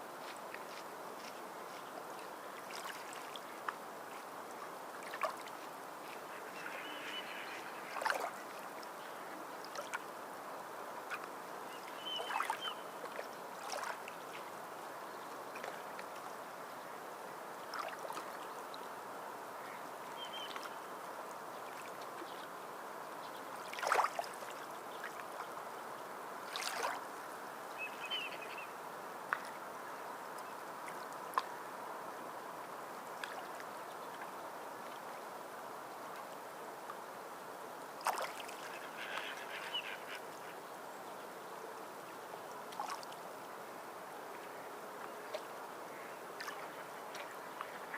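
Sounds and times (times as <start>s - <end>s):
water running and lapping: 0.1s - 16.8s, 17.5s - 22.8s, 23.5s - 28.3s, 37.8s - 41.2s, 41.8s - 47.9s
water splashes: 0.2s - 10.2s, 11.0s - 14.6s, 17.6s - 18.9s, 23.5s - 25.6s, 26.4s - 28.6s, 32.6s - 35.2s, 37.8s - 40.6s, 42.0s - 44.5s, 45.2s - 47.9s
faint bird chirps: 6.3s - 8.2s, 11.7s - 13.0s, 19.6s - 20.8s, 27.7s - 28.8s, 38.6s - 41.2s.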